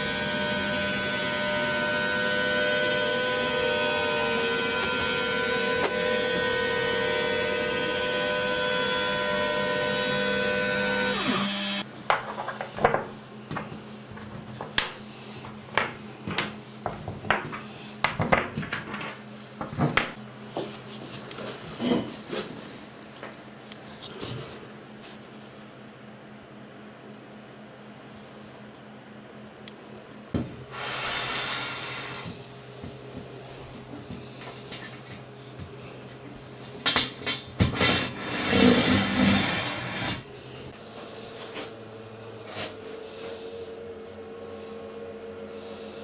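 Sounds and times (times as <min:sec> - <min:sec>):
power tool motor whining: 0:00.0 - 0:11.8.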